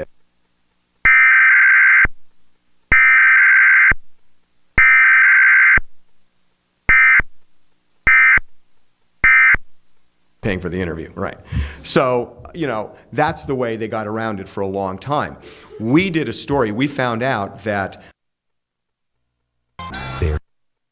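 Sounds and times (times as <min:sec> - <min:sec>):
buzzing two-tone data bursts: 0:01.0 - 0:02.2, 0:02.9 - 0:04.1, 0:04.8 - 0:05.9, 0:06.9 - 0:07.4, 0:08.0 - 0:08.6, 0:09.2 - 0:09.8.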